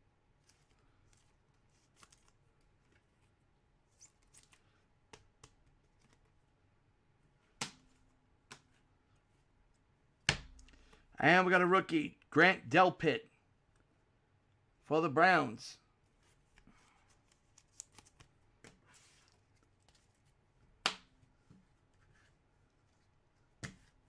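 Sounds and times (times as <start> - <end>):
trading cards rustling and clicking: 0.4 - 6.4, 16.1 - 20.4.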